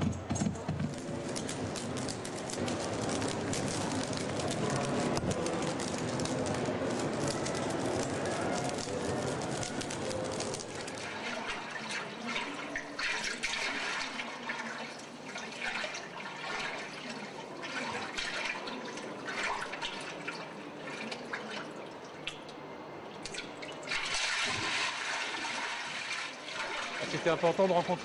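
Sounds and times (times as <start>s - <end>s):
water sloshing and splashing: 10.3s - 28.0s.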